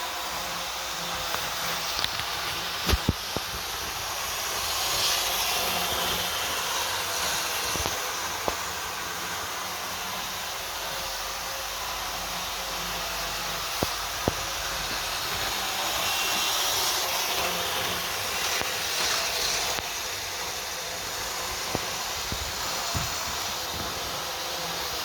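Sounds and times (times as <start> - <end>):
model train running on track: 0.0 - 25.0.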